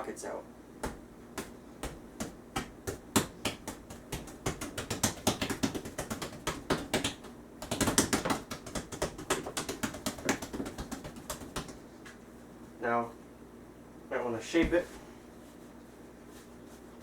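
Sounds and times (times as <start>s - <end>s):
hands punching bread dough: 0.8s - 11.9s.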